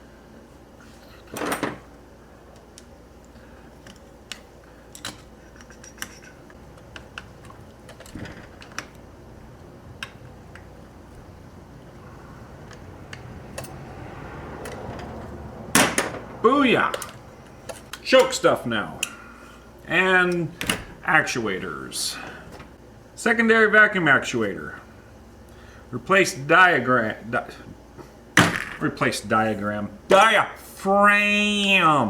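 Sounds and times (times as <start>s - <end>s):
screwdriver clicking on metal parts: 12.6s - 13.8s
metal clank: 14.6s - 16.3s.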